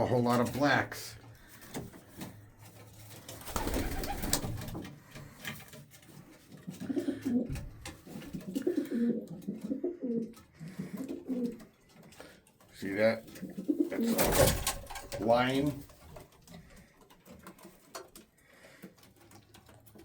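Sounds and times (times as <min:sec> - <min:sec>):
pigeons cooing: 0:03.4 - 0:05.4, 0:06.5 - 0:12.4, 0:13.2 - 0:14.8.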